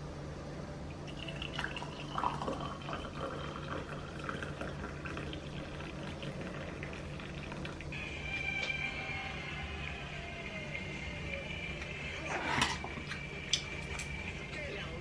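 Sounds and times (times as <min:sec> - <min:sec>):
steady low hum: 0:00.0 - 0:15.0
liquid pouring and trickling: 0:00.9 - 0:08.0.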